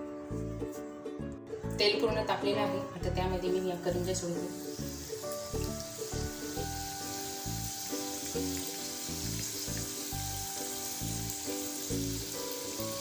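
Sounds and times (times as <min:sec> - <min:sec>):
food sizzling in hot oil: 0:03.8 - 0:13.0.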